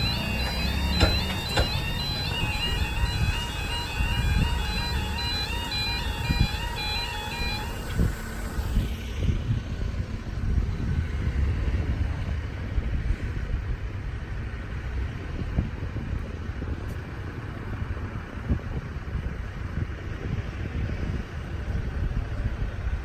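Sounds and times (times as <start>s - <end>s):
low thumps: 0.0s - 8.8s
two-tone crossing alarm: 0.0s - 9.5s.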